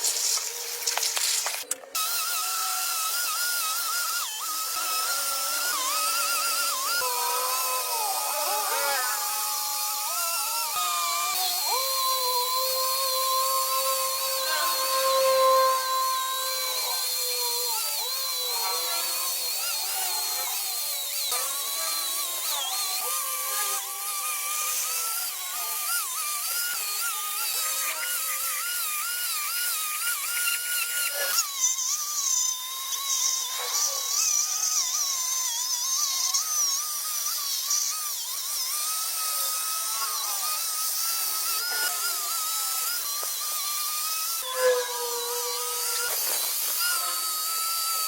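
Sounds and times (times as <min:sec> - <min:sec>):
hiss: 0:00.0 - 0:01.7
small power tool whining: 0:00.0 - 0:48.0.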